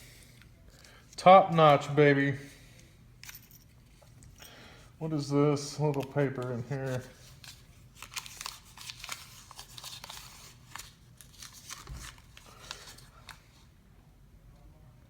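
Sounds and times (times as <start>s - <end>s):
paper packing crinkling: 5.1s - 13.7s.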